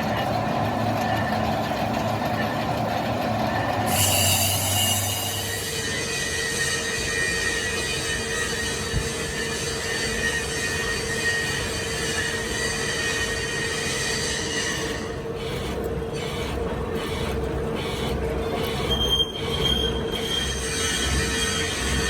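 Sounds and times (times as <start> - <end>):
metalworking machinery humming: 0.0 - 22.0
high metallic squeal: 3.9 - 16.6, 17.8 - 22.0.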